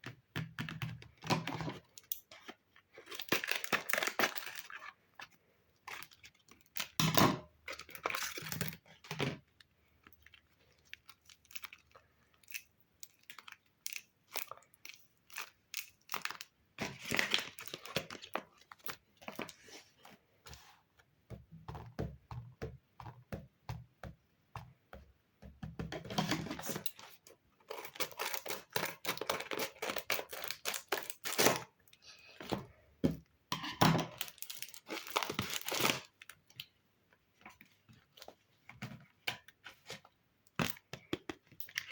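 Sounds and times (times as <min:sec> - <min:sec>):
paper crinkling and tearing: 0:02.4 - 0:05.0, 0:13.2 - 0:19.9, 0:26.3 - 0:31.7, 0:34.2 - 0:36.3.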